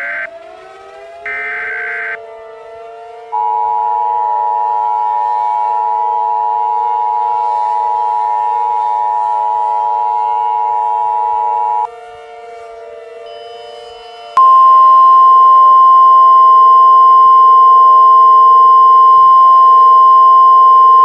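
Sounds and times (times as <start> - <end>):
loud steady alert tone: 0.0 - 0.4, 1.3 - 2.2, 3.3 - 11.9
wavering siren-like tone: 0.0 - 21.0.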